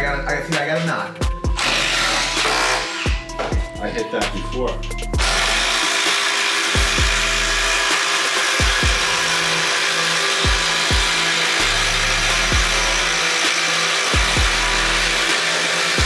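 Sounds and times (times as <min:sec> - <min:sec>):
music with kick drum and bass: 0:00.0 - 0:05.9, 0:06.8 - 0:08.0, 0:08.6 - 0:09.4, 0:10.4 - 0:13.2, 0:14.1 - 0:16.0.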